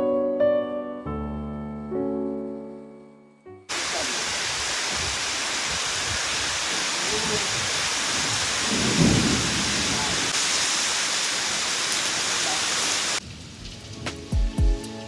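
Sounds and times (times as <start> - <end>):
piano notes: 0.0 - 3.7
heavy rain hissing: 3.7 - 15.0.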